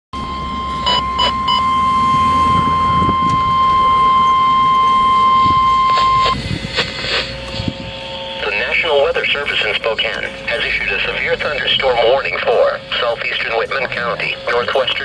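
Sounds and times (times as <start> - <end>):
steady warning alarm tone: 0.2 - 15.0
short high beeps: 0.6 - 6.4.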